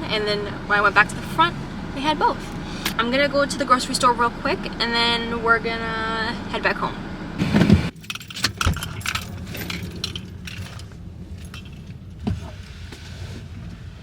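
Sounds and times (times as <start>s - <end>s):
keys jangling: 8.0s - 11.9s.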